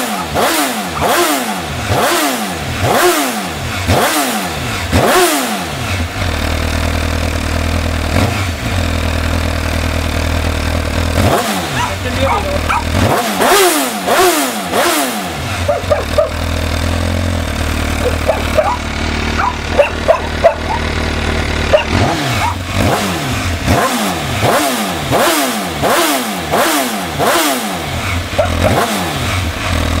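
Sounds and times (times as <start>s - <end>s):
dog barking: 0.0s - 1.2s, 11.6s - 13.1s, 15.6s - 16.5s, 18.0s - 21.0s, 21.7s - 22.7s, 28.3s - 28.9s
motorcycle engine revving and idling: 0.0s - 30.0s.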